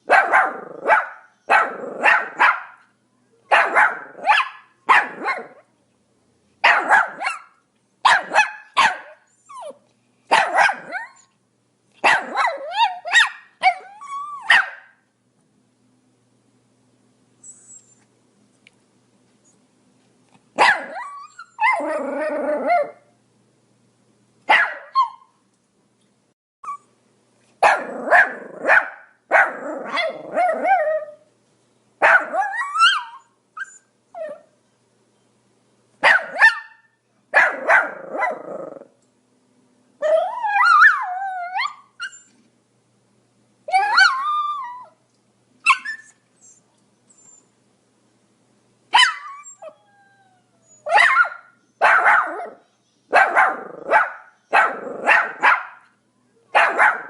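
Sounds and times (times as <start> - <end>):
small dog barking: 0.0 - 2.9, 3.5 - 5.7, 6.6 - 11.2, 12.0 - 15.0, 20.6 - 22.0, 24.5 - 25.3, 27.6 - 31.2, 32.0 - 33.2, 36.0 - 38.8, 48.9 - 49.4, 50.9 - 57.0.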